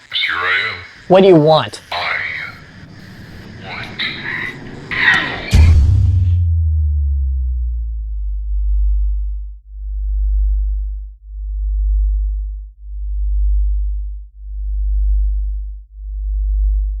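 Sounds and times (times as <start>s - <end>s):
deep pulsing electronic hum: 1.4s - 17.0s.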